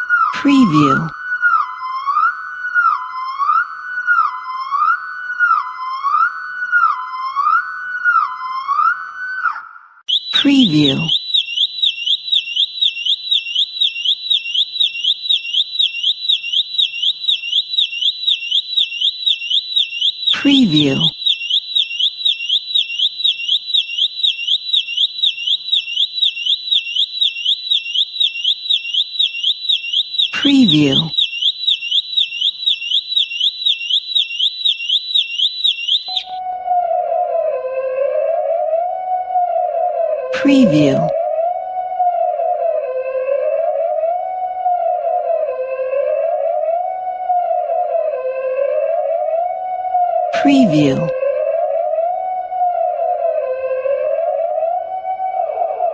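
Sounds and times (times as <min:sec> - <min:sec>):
electronic alarm siren warbling: 0:00.0 - 0:02.2, 0:02.8 - 0:36.5, 0:40.4 - 0:41.2, 0:50.3 - 0:51.1.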